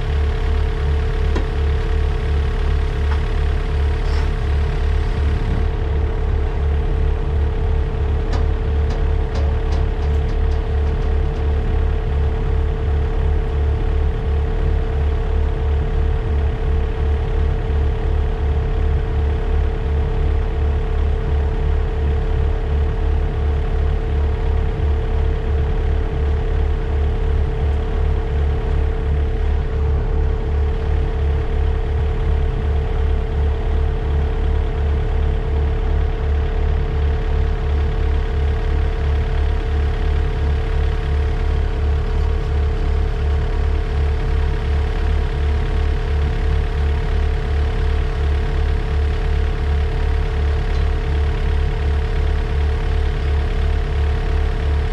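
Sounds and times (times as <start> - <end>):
diesel engine idling: 0.0 - 54.9.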